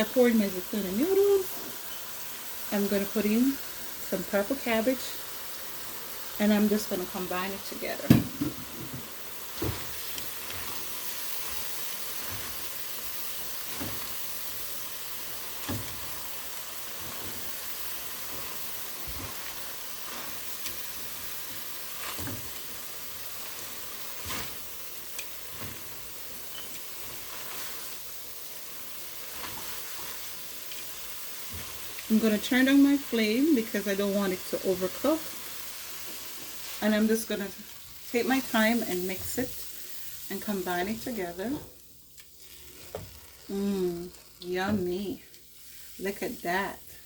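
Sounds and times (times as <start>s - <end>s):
food sizzling in a hot pan: 0.0s - 47.0s.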